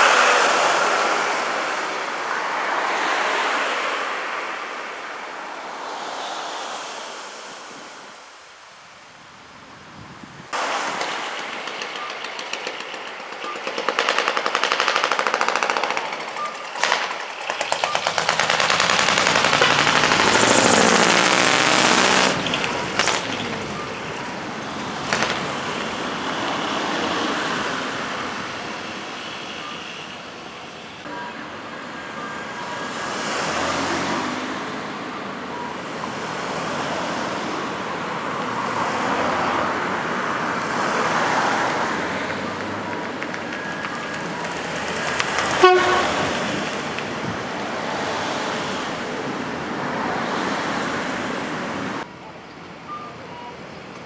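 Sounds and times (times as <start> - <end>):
trucks driving past: 0.0 - 7.7, 10.6 - 52.1
truck horn toots: 17.6 - 23.9, 44.6 - 47.0.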